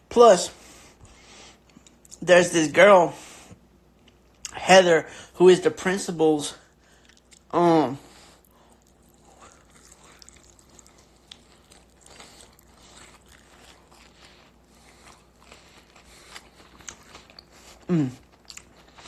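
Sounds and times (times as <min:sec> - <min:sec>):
crunching and chewing food: 0:01.0 - 0:02.3, 0:03.9 - 0:04.6, 0:06.7 - 0:19.0
person saying uh: 0:07.5 - 0:08.1, 0:17.9 - 0:18.2.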